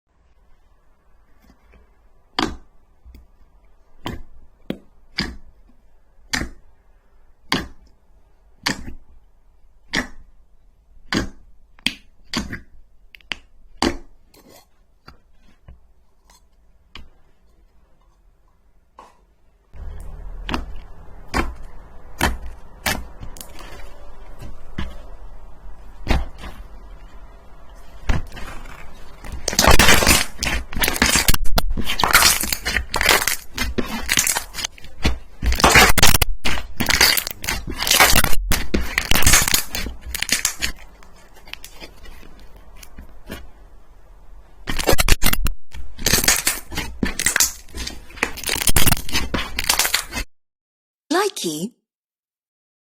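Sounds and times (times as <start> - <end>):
slime crackling and popping: 28.0 - 42.6, 44.6 - 50.2.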